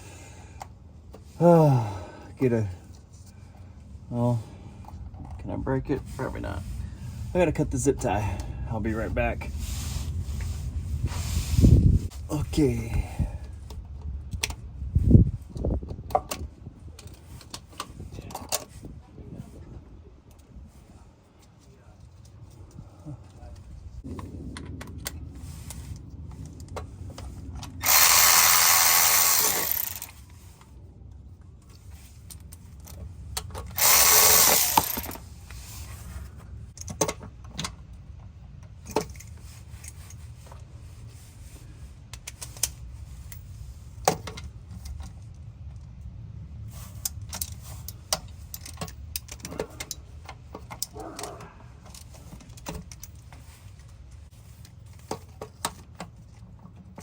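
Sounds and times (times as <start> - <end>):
power tool running: 27.8 - 30.2, 33.8 - 35.2.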